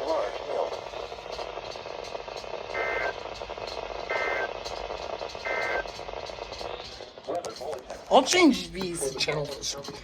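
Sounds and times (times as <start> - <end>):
radio hiss: 0.0 - 7.9
harsh digital data bursts: 2.1 - 7.0.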